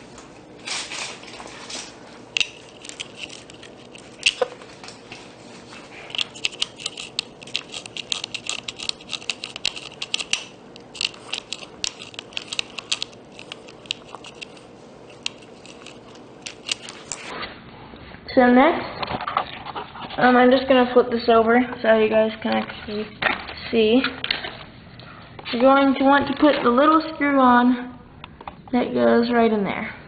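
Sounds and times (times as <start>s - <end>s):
plastic parts clicking and rattling: 0.9s - 5.0s, 6.1s - 17.3s.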